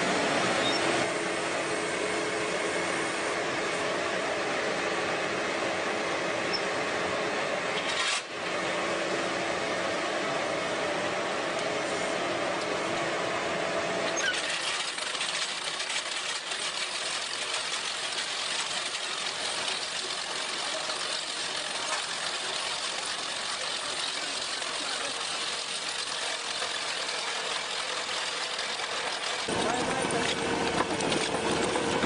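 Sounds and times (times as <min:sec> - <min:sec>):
trenching machine running: 0:07.8 - 0:08.3, 0:14.1 - 0:32.0.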